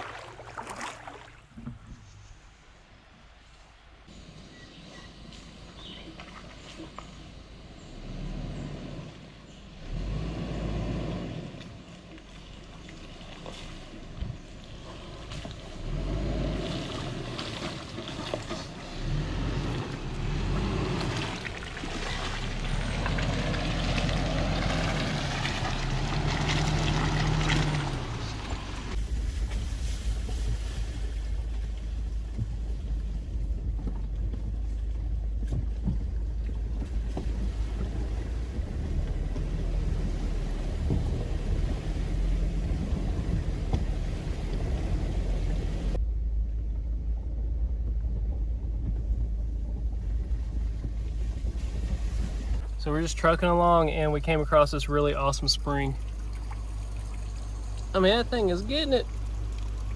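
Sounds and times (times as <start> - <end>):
vehicle engine and road noise: 1.3 - 59.9
wind buffeting microphone: 28.5 - 52.8.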